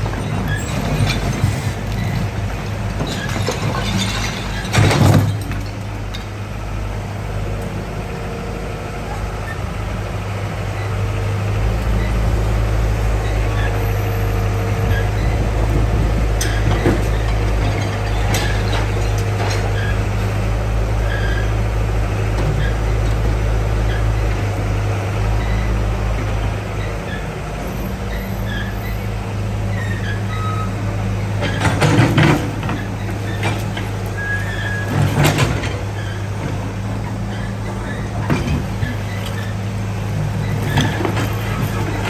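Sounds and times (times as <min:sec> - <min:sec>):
debris knocks and crashes: 0:00.0 - 0:06.3, 0:15.6 - 0:20.0, 0:31.4 - 0:35.9, 0:40.2 - 0:42.0
excavator engine running: 0:00.0 - 0:42.0.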